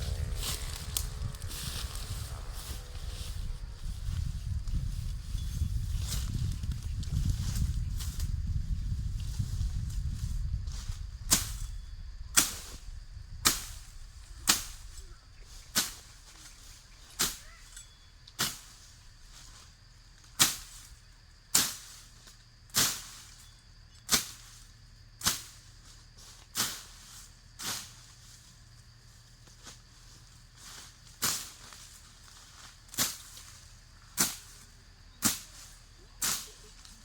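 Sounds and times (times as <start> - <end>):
low rumble: 0.0 - 11.2.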